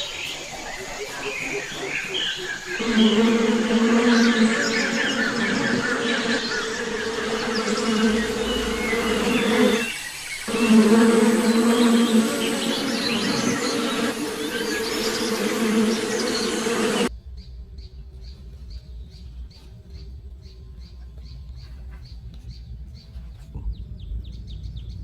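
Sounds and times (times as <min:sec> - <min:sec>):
bee buzzing: 0:02.6 - 0:17.1.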